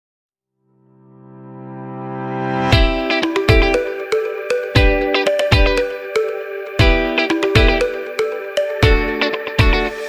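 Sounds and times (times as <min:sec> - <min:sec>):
music with plucked notes and beat: 0:02.7 - 0:10.0.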